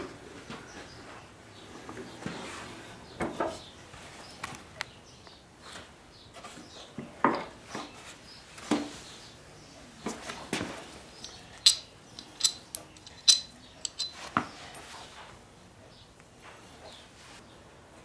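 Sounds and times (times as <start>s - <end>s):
metal tools and screws clinking: 11.2s - 14.3s.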